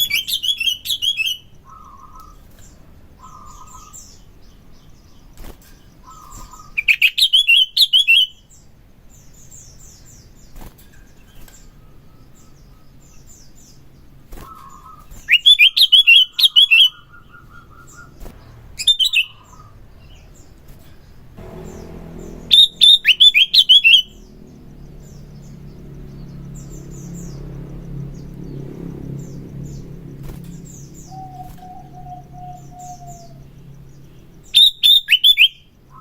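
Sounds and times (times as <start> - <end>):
bird chattering song: 3.2 - 5.3, 22.8 - 36.0
low steady hum: 21.3 - 34.6
high bird chirps: 21.4 - 28.6.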